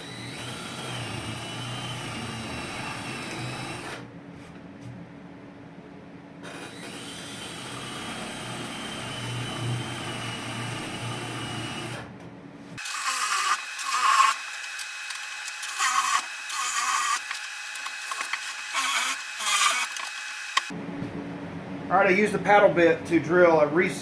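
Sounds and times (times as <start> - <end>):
drill bit boring into wood: 0.0 - 4.0, 12.8 - 20.7
electric drill running: 12.8 - 20.7.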